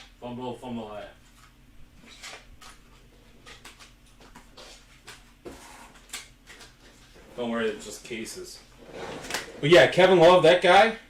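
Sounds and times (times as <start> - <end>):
faint electrical hum: 0.0 - 11.0
cards and packaging clicking and rustling: 1.3 - 7.2.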